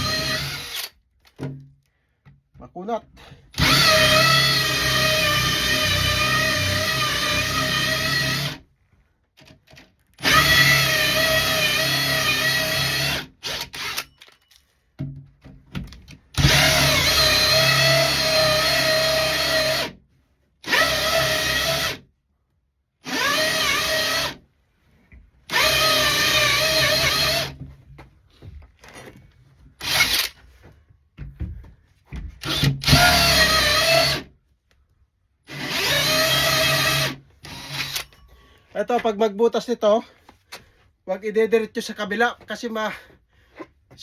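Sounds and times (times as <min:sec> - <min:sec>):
power drill cutting hole saw: 0:00.0 - 0:01.0, 0:03.2 - 0:08.6, 0:10.2 - 0:14.1, 0:16.4 - 0:20.0, 0:20.6 - 0:22.0, 0:23.0 - 0:24.4, 0:25.5 - 0:27.6, 0:29.8 - 0:30.4, 0:32.4 - 0:34.3, 0:35.5 - 0:38.2.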